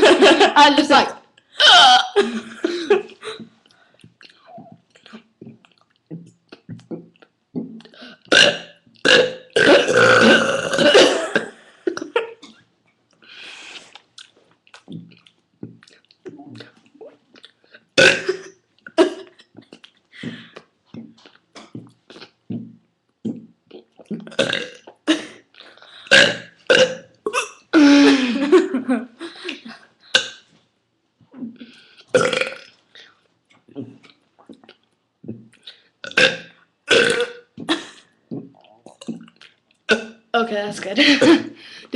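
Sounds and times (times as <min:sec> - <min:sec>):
person burping: 0:05.4 - 0:12.6, 0:18.0 - 0:25.5, 0:26.1 - 0:28.5, 0:30.1 - 0:30.4, 0:31.4 - 0:32.7, 0:35.2 - 0:40.3.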